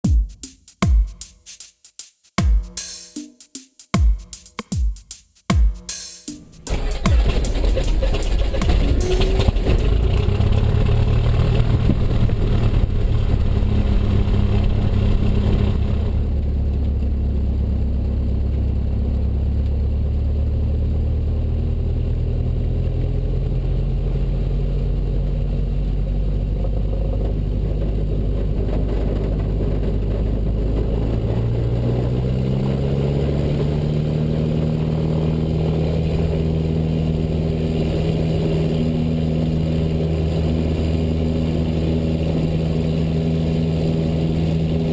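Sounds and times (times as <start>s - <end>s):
propeller plane engine running: 6.6s - 44.9s.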